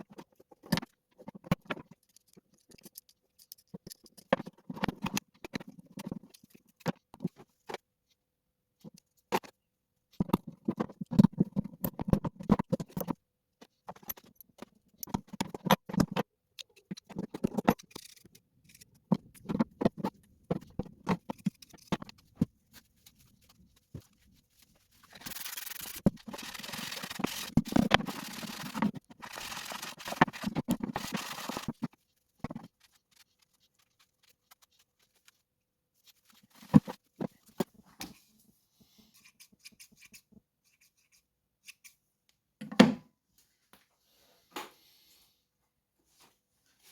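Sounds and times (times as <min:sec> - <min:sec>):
metal rubbing and scraping: 0:24.7 - 0:34.6.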